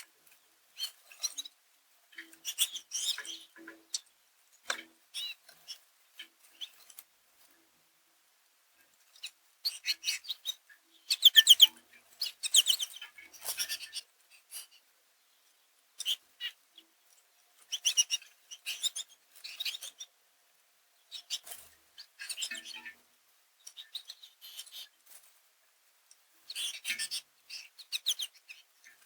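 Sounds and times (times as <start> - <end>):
goldfinches twittering: 11.1 - 11.7.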